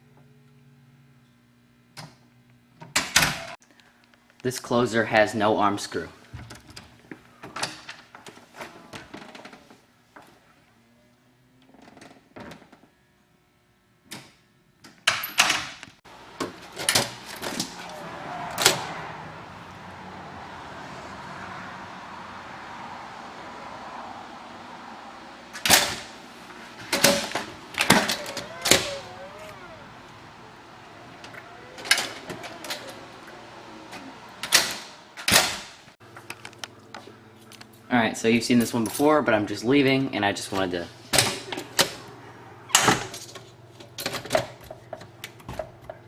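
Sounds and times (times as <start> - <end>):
rushing outdoor road noise: 16.1 - 36.0
door clunking shut: 26.7 - 35.7.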